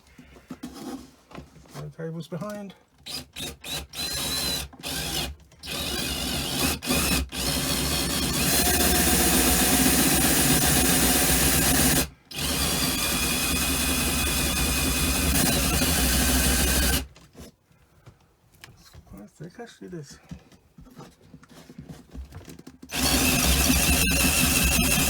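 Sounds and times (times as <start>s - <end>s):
power drill boring through panel: 3.0s - 17.1s, 22.9s - 25.0s.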